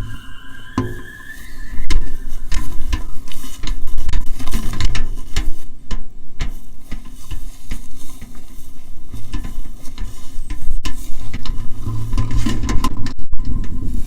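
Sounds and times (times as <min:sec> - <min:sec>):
low rumble: 0:00.0 - 0:04.4
low hum: 0:00.0 - 0:06.8
kite reel crackling and clicks: 0:00.0 - 0:14.0.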